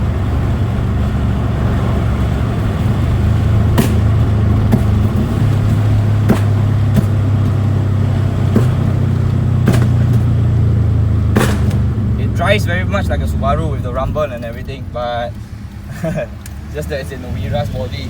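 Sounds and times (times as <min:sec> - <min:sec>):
car engine rumbling: 0:00.0 - 0:18.0
sharp clicks or pops: 0:03.7 - 0:07.8, 0:08.4 - 0:10.4, 0:11.3 - 0:12.0.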